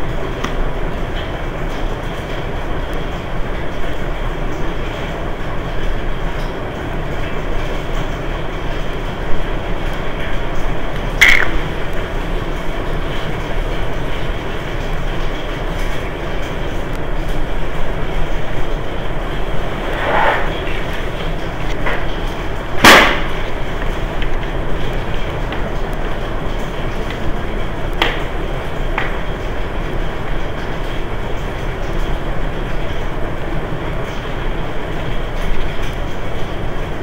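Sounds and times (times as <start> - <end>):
sharp click: 11.2 - 11.6
steady rumbling: 16.6 - 29.1.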